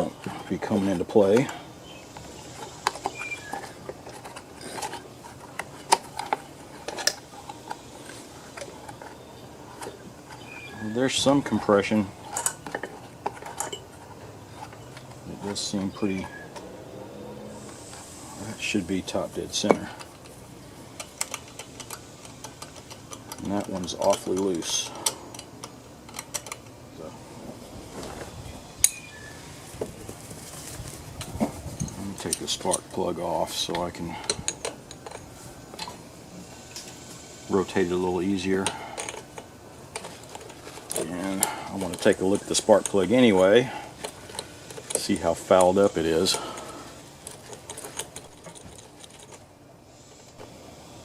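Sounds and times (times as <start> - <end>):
metallic clicks and clanks: 21.0 - 26.8, 38.5 - 49.5.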